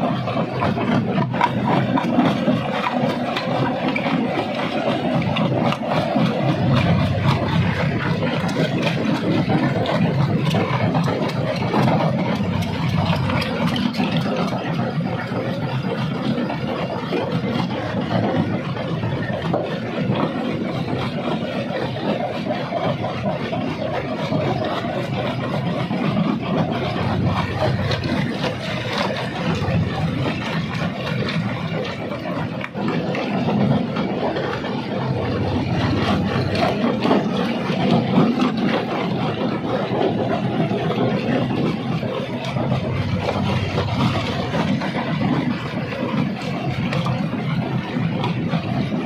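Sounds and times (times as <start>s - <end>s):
rock crusher drone: 0.0s - 49.0s.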